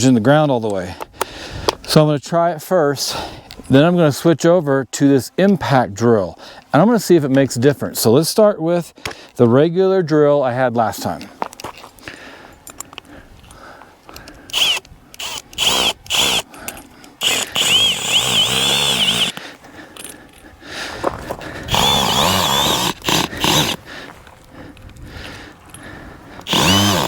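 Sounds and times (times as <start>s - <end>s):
cordless drill whining: 14.2s - 19.4s, 21.5s - 23.8s, 25.8s - 27.0s.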